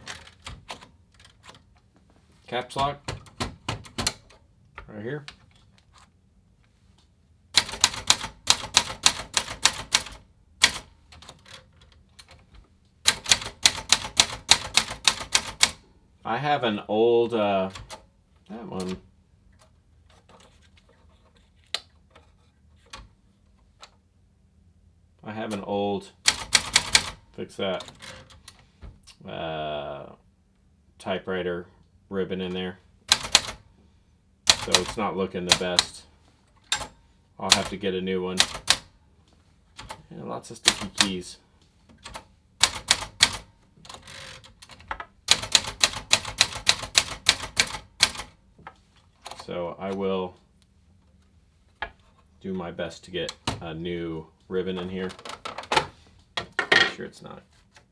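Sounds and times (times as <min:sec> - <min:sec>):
typewriter mechanical clicks: 0:02.7 - 0:04.4, 0:07.6 - 0:12.5, 0:13.1 - 0:15.8, 0:17.4 - 0:18.1, 0:25.5 - 0:27.2, 0:33.1 - 0:33.6, 0:34.4 - 0:36.0, 0:36.7 - 0:38.9, 0:39.8 - 0:40.0, 0:40.6 - 0:41.3, 0:42.0 - 0:48.4.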